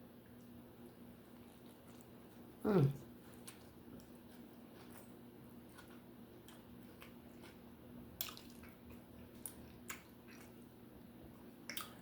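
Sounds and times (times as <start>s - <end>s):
low steady hum: 0.0s - 12.0s
mouth clicks and smacks of chewing: 8.2s - 10.6s, 11.6s - 12.0s.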